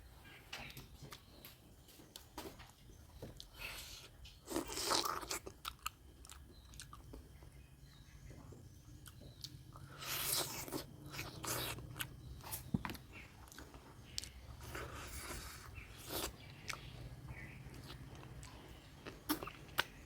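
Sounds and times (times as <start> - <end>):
wet chewing and biting: 3.4 - 7.3, 9.0 - 20.0.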